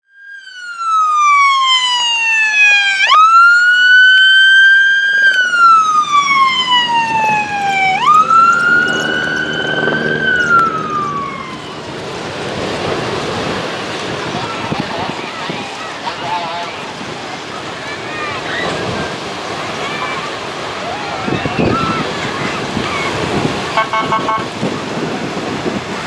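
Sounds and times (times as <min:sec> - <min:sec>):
electronic siren: 0:00.0 - 0:12.6, 0:23.7 - 0:24.6.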